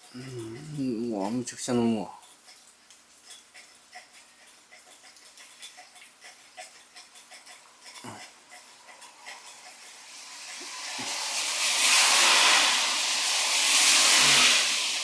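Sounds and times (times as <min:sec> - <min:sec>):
puppy lapping water: 0:02.2 - 0:11.2.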